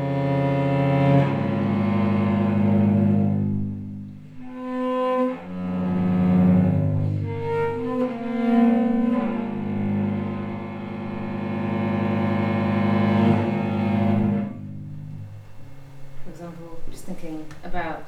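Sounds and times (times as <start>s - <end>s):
cello bowed notes: 0.0s - 18.0s.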